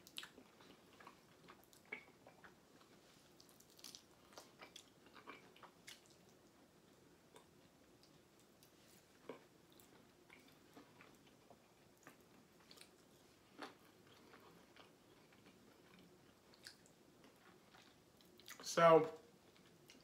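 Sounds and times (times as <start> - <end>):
person chewing food: 0.0 - 18.6, 19.4 - 20.0.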